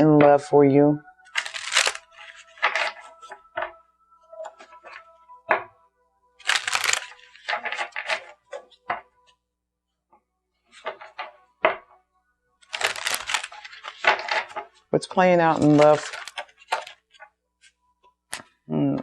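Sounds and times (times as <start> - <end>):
cards being shuffled: 1.3 - 3.7, 6.4 - 8.8, 12.6 - 14.7, 15.4 - 18.5.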